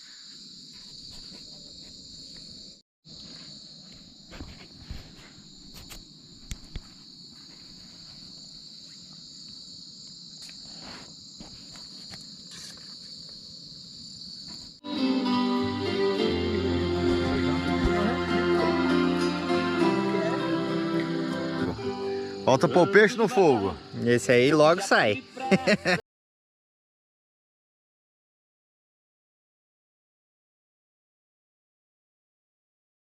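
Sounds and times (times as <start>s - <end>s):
crickets and insects chirring: 0.0s - 26.0s.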